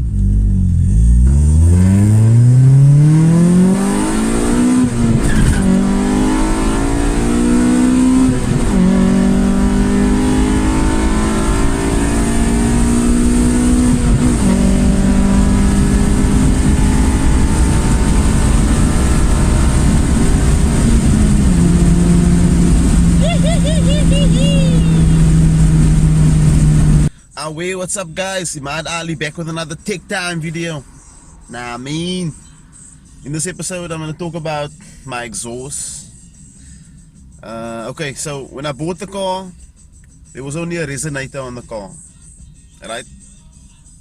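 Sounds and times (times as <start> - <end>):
car engine accelerating: 0.0 - 27.1.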